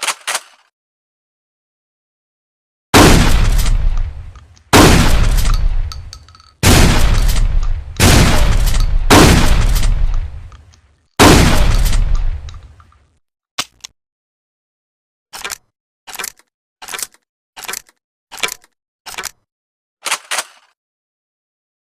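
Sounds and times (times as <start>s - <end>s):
gun mechanism clacks: 0.0s - 0.7s, 3.5s - 9.0s, 9.6s - 10.9s, 11.6s - 13.9s, 15.4s - 19.4s, 20.0s - 20.8s
loud shotgun shots: 3.0s - 10.5s, 11.2s - 12.7s.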